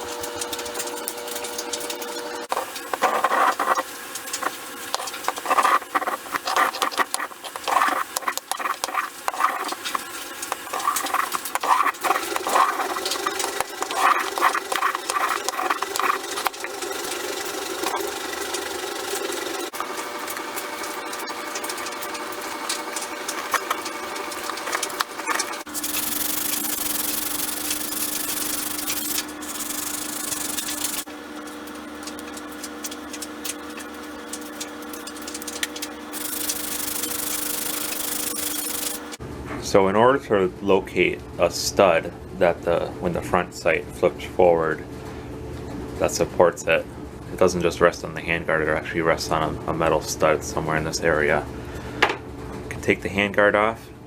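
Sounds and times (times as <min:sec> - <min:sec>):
motor hum: 0:00.0 - 0:39.2
wood being rubbed and scratched: 0:02.5 - 0:39.2
power sander on wood: 0:10.6 - 0:39.2.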